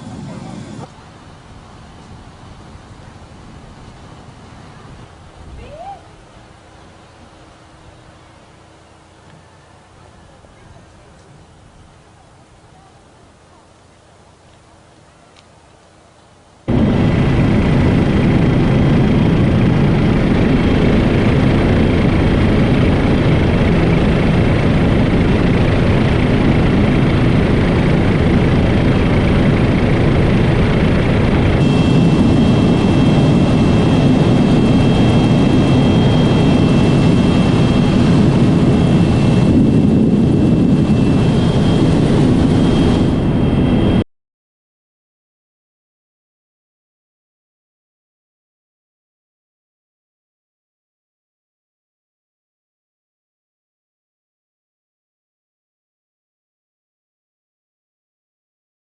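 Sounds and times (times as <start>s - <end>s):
helicopter engine and rotor: 0.0s - 0.9s, 16.7s - 44.0s
thin high whine: 0.0s - 1.0s, 16.7s - 44.0s.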